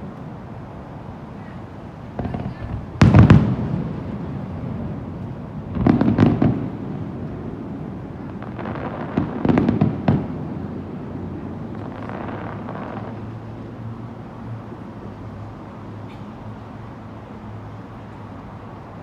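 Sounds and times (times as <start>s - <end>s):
fireworks bangs and crackles: 2.0s - 13.8s.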